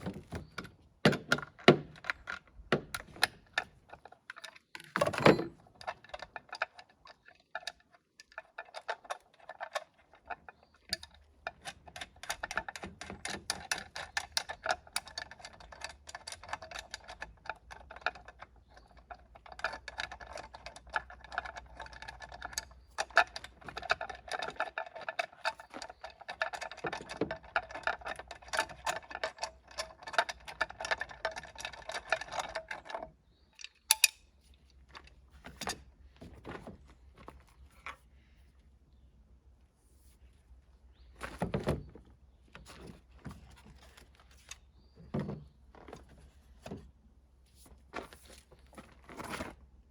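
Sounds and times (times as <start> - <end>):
hard objects clicking and rattling: 0.0 - 38.0.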